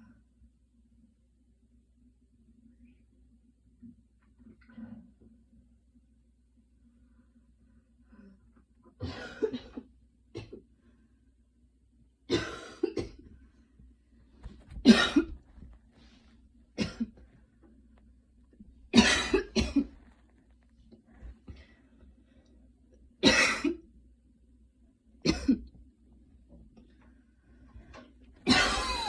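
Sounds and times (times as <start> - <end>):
woman coughing: 9.0 - 9.8, 12.3 - 13.2, 14.8 - 15.4, 16.8 - 17.2, 19.0 - 20.0, 23.2 - 23.8, 25.3 - 25.7, 28.4 - 29.0.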